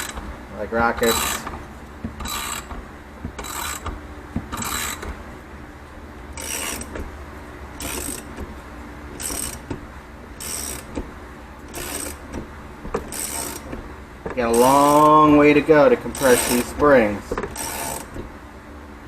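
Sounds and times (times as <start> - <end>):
hand ratchet clicking: 1.0 - 1.5, 2.2 - 2.8, 3.4 - 5.1, 6.4 - 7.0, 7.8 - 8.4, 9.2 - 9.7, 10.4 - 11.0, 11.7 - 12.4, 13.1 - 13.7, 14.5 - 15.2, 16.1 - 18.2.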